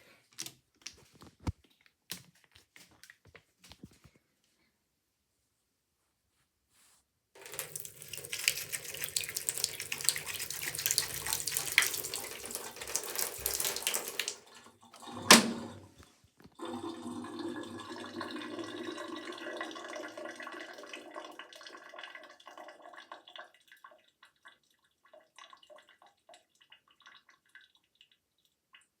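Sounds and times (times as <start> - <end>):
water dripping: 7.4 - 15.3, 16.5 - 29.0
running water splashing: 7.4 - 15.9.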